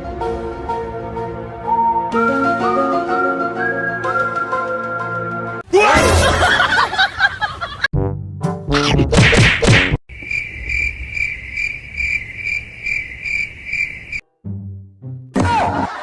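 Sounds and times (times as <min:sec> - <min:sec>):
cricket chirping: 0:10.1 - 0:14.2.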